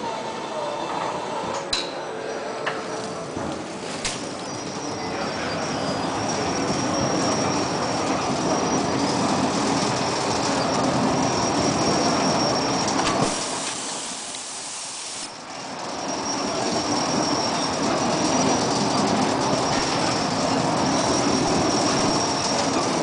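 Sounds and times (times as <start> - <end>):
wrapping machine rumbling and rattling: 2.9 - 13.3, 15.4 - 23.0.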